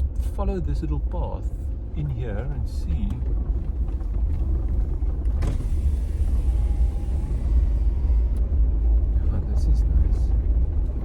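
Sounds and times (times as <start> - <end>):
vehicle rumbling on dirt track: 0.0 - 11.0.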